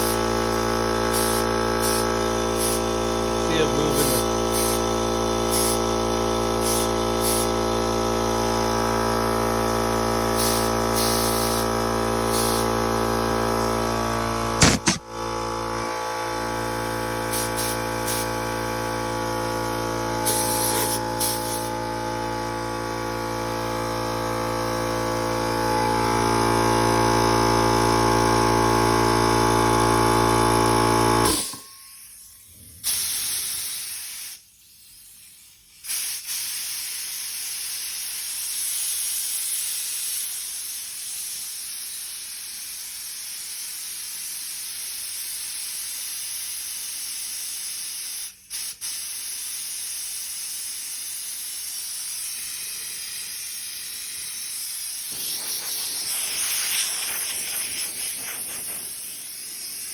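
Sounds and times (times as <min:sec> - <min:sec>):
compressed air hissing: 0:00.0 - 0:00.3, 0:01.0 - 0:06.0, 0:06.6 - 0:07.6, 0:10.3 - 0:13.0, 0:14.6 - 0:15.0, 0:17.3 - 0:18.5, 0:20.2 - 0:21.8, 0:31.2 - 0:36.9, 0:48.5 - 0:59.9
air compressor running: 0:00.0 - 0:42.5, 0:45.5 - 0:59.9.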